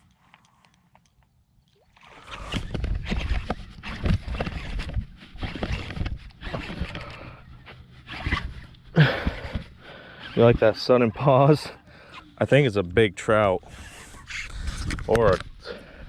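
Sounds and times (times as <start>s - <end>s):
fish thrashing and splashing water: 1.7s - 3.0s.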